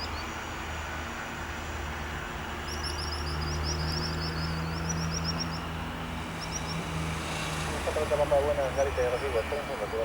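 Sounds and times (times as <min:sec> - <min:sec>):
low engine hum: 0:00.0 - 0:10.0.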